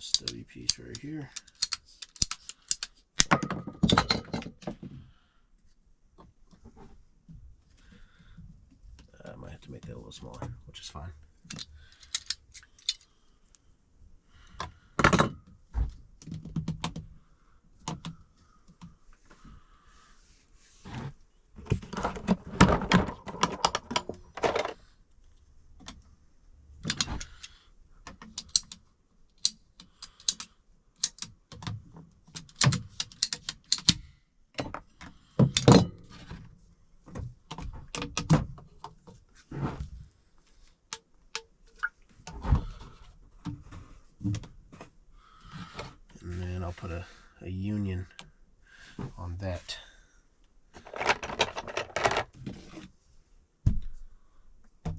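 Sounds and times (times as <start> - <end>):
plastic pipes and tools clattering: 0.0 - 5.1, 14.5 - 17.0, 20.8 - 24.9, 26.8 - 28.8, 29.4 - 34.0, 34.6 - 40.0, 50.7 - 52.9.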